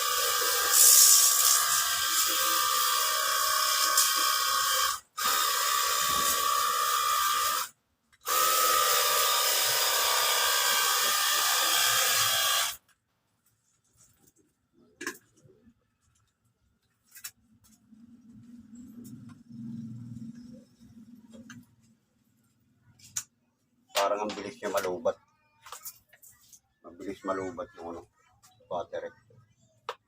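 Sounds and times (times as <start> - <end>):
pressure washer spraying water: 0.0 - 2.6.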